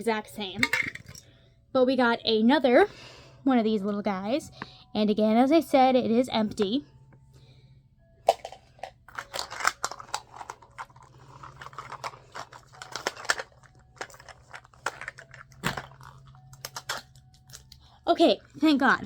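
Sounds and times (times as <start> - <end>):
plastic wrapping crinkling and tearing: 9.1 - 18.0.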